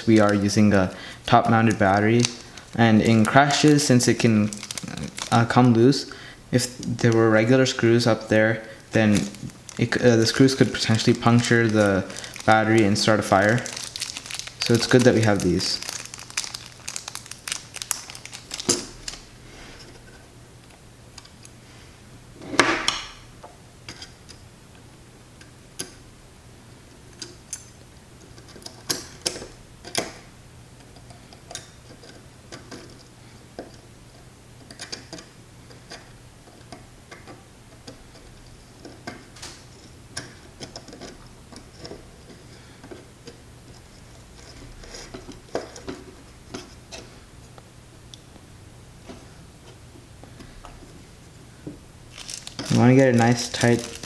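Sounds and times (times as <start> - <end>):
clatter of small parts: 2.0 - 5.5, 9.0 - 19.3, 52.1 - 54.0.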